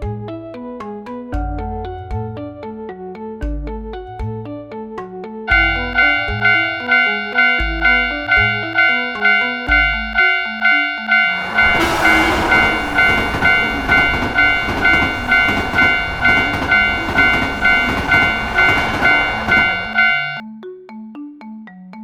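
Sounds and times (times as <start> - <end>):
railroad crossing bell ringing: 5.5 - 20.4
train rushing past: 5.5 - 20.4.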